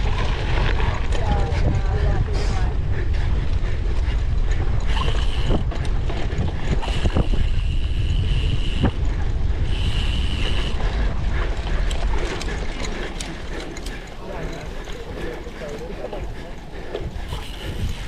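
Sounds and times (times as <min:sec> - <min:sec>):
bike chain and frame rattling: 0:00.0 - 0:18.0
wind rushing on microphone: 0:00.0 - 0:18.0
high-pitched whines from bike: 0:06.8 - 0:10.9.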